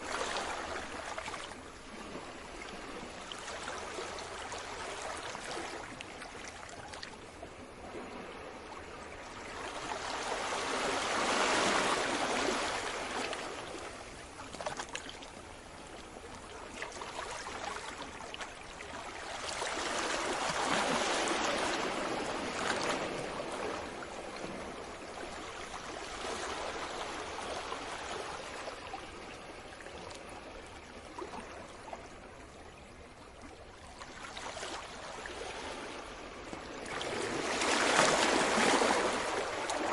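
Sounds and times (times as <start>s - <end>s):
sea waves washing onto shore: 0.0s - 30.4s, 34.5s - 39.9s.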